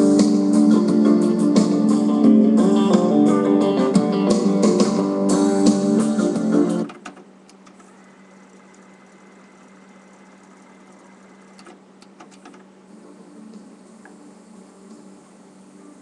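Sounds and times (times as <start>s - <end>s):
song with guitar: 0.0s - 6.9s
faint steady hum: 6.1s - 16.0s.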